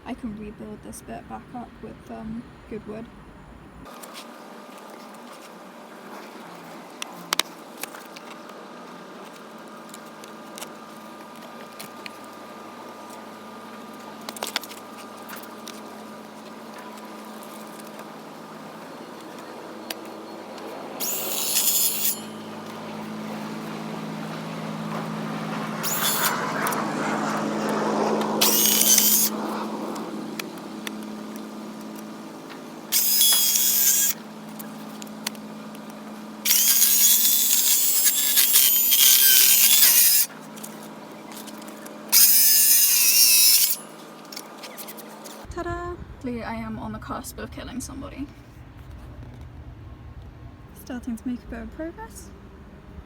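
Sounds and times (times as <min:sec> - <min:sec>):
steady low hum: 0:00.0 - 0:03.9, 0:45.4 - 0:53.0
power saw cutting wood: 0:14.0 - 0:45.4.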